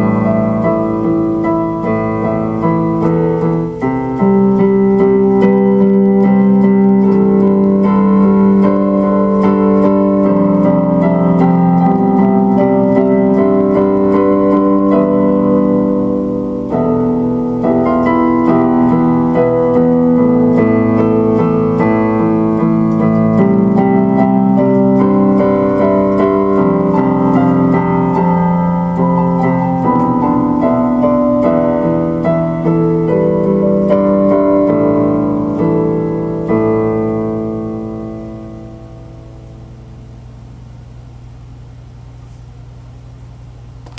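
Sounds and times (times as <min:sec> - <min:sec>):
electric piano chords: 0:00.0 - 0:43.9.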